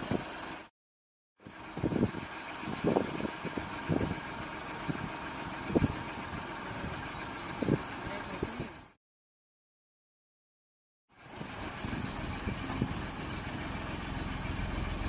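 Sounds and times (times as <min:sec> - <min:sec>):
car engine idling: 0:00.0 - 0:00.7, 0:01.4 - 0:09.0, 0:11.2 - 0:15.0.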